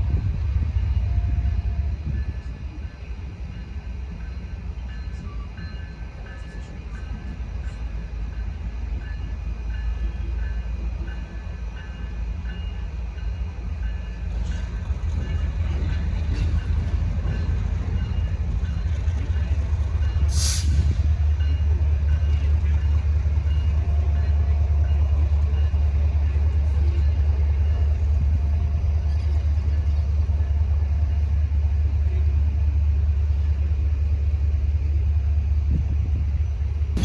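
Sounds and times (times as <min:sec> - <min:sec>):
locomotive rumble: 0:00.0 - 0:37.0
brief sharp hiss: 0:20.3 - 0:20.9.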